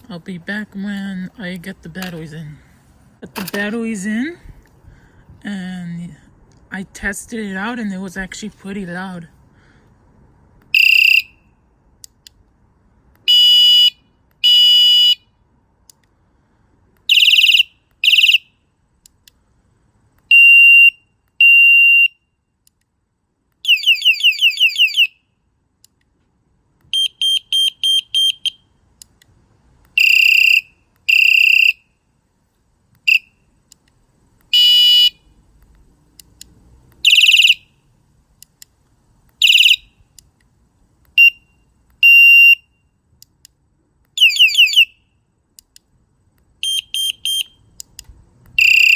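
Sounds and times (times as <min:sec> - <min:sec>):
quick beeps: 0:27.0 - 0:28.6, 0:39.4 - 0:39.8, 0:46.6 - 0:47.7.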